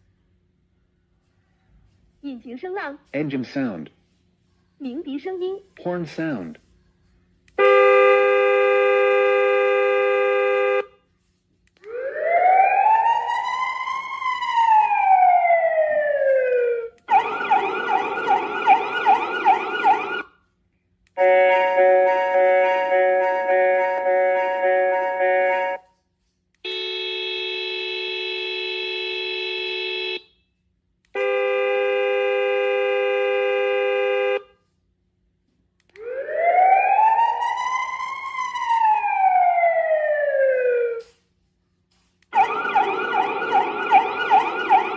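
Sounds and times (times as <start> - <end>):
horn blasts: 7.6 - 11.1, 21.1 - 26.0, 26.6 - 30.4, 31.1 - 34.8
siren wail sweeping upward: 11.8 - 20.3, 21.2 - 25.8, 36.0 - 41.0, 42.4 - 44.9.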